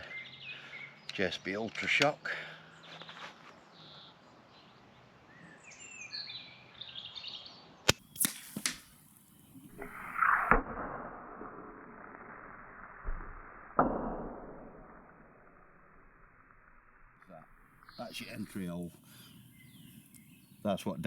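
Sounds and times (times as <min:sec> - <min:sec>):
birds chirping: 0:00.0 - 0:10.5, 0:17.2 - 0:21.0
pellet striking a can: 0:07.9 - 0:09.2
can spraying with a hiss: 0:07.9 - 0:10.5
air rifle shot: 0:07.9 - 0:16.8.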